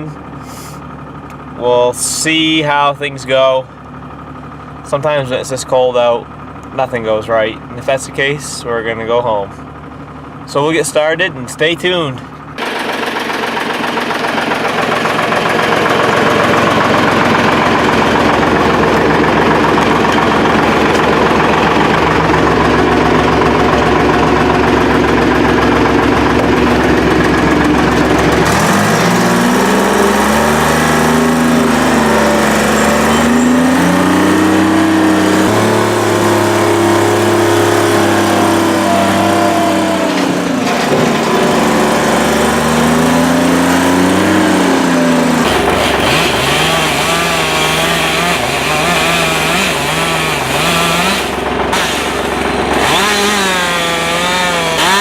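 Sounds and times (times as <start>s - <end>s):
diesel engine running: 0.0s - 55.0s
chainsaw cutting: 12.6s - 55.0s.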